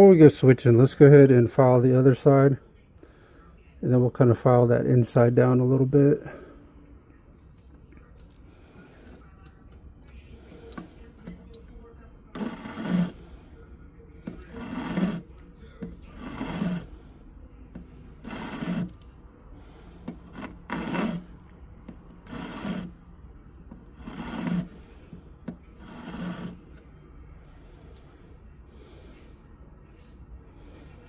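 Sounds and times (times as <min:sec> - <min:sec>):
metal file rasping on ring: 0:10.4 - 0:11.7, 0:12.3 - 0:26.8.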